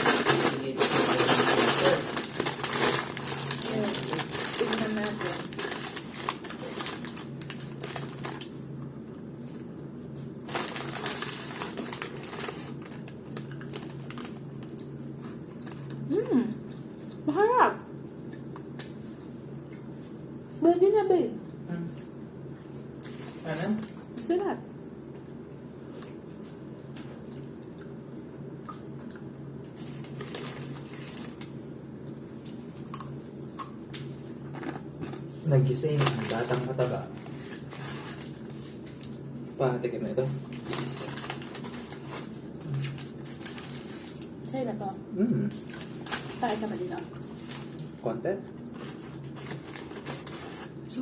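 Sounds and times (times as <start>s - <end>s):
paper packaging crinkling: 0.0s - 8.6s, 10.2s - 15.4s, 29.7s - 31.6s, 34.5s - 39.2s, 40.4s - 44.4s, 45.6s - 47.9s, 48.7s - 50.9s
steady low hum: 0.0s - 51.0s
food being bitten and handled: 25.1s - 35.4s.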